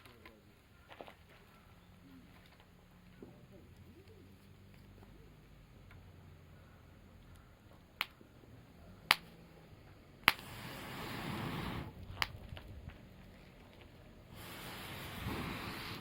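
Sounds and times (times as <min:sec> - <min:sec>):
campfire crackling: 0:00.0 - 0:16.0
sharp wood pops: 0:09.1 - 0:09.4, 0:10.2 - 0:10.5, 0:12.1 - 0:12.7.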